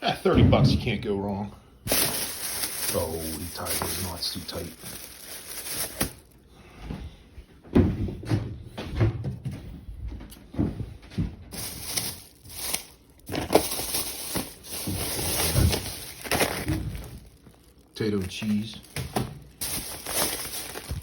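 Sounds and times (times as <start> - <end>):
plastic bag rustling: 1.8 - 6.5, 11.5 - 21.0
knocks and thumps: 7.7 - 12.2.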